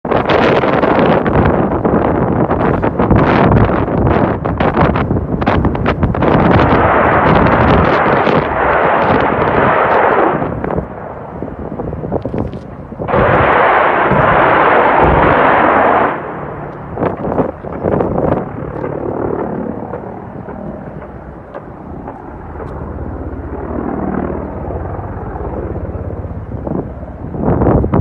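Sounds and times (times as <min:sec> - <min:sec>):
helicopter engine and rotor: 0:00.1 - 0:28.0
loud rushing blast: 0:05.8 - 0:12.1, 0:13.0 - 0:25.0
sharp bangs: 0:13.0 - 0:24.9.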